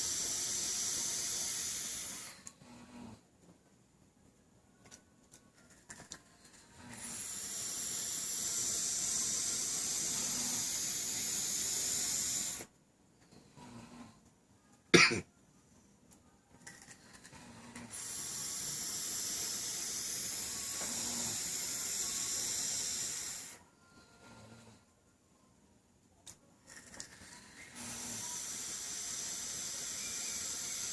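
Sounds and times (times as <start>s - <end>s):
vape coil hissing and sizzling: 0.0s - 2.6s, 6.7s - 12.7s, 17.2s - 23.7s, 26.7s - 30.9s.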